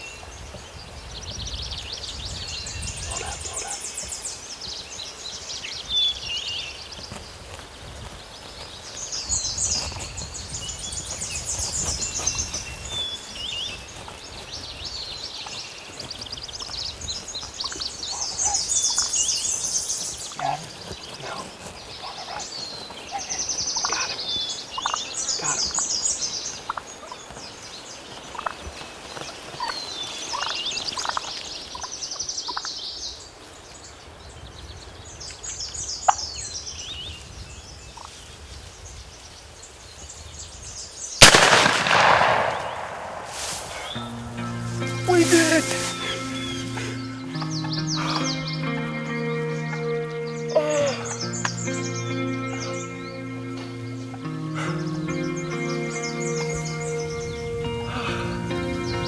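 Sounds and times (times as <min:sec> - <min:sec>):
turkeys gobbling: 0:17.6 - 0:19.3, 0:20.2 - 0:21.4, 0:22.1 - 0:24.2, 0:24.8 - 0:25.8, 0:28.3 - 0:28.6, 0:30.3 - 0:31.9, 0:41.2 - 0:59.0.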